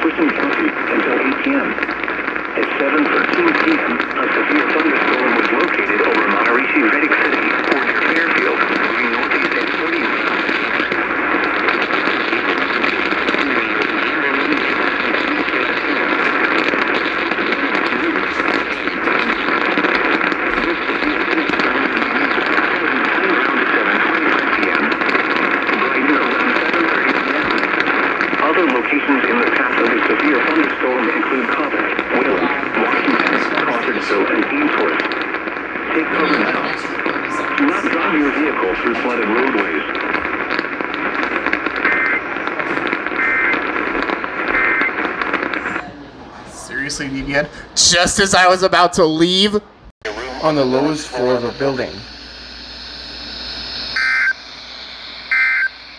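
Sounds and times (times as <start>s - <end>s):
radio static hiss: 0.0s - 45.8s, 50.0s - 55.9s
faint synthesized voice: 50.0s - 55.6s
two-tone data bursts: 50.0s - 55.9s.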